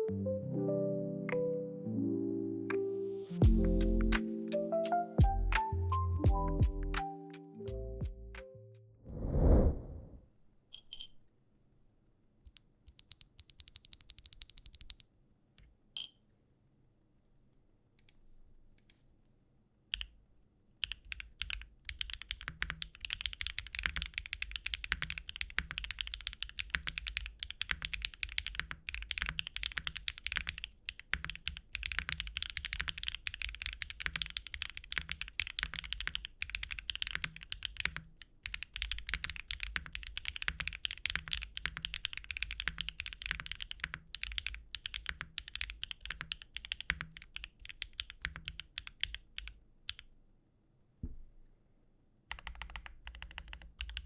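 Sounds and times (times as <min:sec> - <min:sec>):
mechanical keyboard typing: 0:12.5 - 0:15.0, 0:20.8 - 0:50.1, 0:52.3 - 0:54.0.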